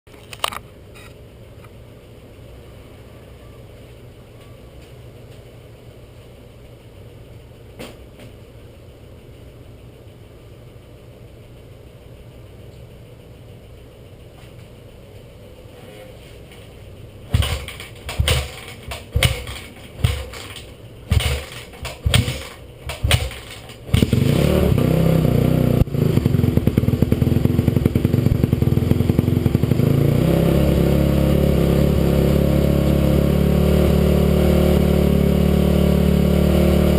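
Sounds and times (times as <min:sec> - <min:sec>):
kickstarter spinning engine over: 0:17.3 - 0:28.4
motorcycle engine kick-started: 0:17.3 - 0:29.9.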